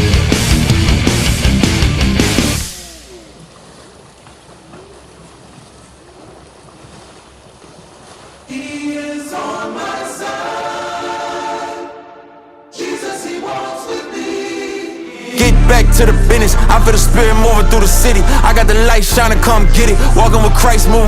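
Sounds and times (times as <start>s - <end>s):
loud rock music: 0.0s - 2.9s, 15.4s - 21.0s
choir singing held chord: 8.5s - 21.0s.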